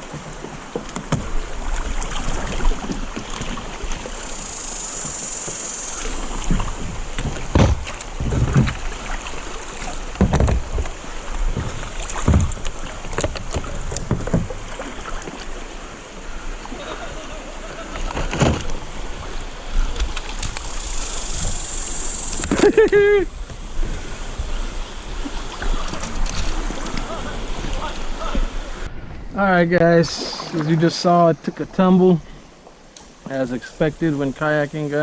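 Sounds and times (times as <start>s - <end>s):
water sloshing against kayak hull: 0.0s - 33.9s
splashy thumps: 6.4s - 9.0s.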